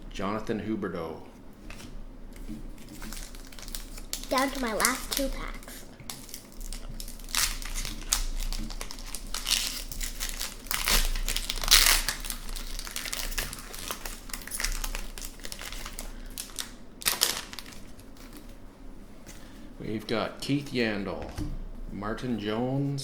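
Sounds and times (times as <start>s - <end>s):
wrapper tearing and crinkling: 2.8s - 18.6s.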